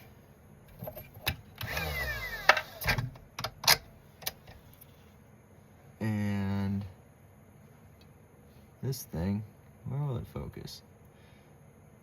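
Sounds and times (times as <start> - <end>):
sharp clicks and knocks: 2.4 - 4.6.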